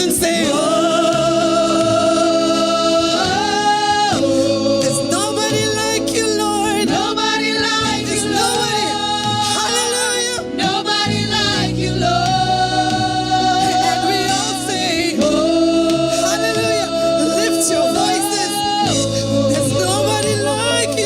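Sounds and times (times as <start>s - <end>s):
gospel worship singing: 0.0s - 21.0s
instrumental backing: 0.0s - 21.0s.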